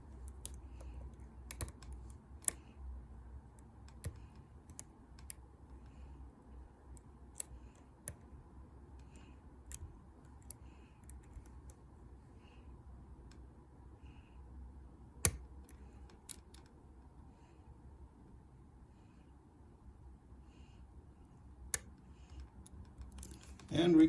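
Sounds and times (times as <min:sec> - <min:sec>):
small metal clicks of lock picking: 0:00.2 - 0:02.7, 0:03.6 - 0:06.0, 0:06.9 - 0:08.3, 0:09.0 - 0:11.8, 0:15.2 - 0:16.7, 0:21.7 - 0:23.7.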